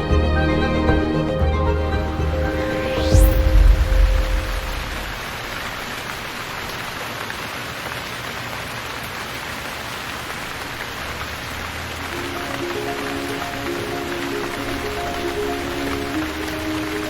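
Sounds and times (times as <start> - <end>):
steady rain falling: 0.0 - 17.0
low rumble: 2.2 - 6.0.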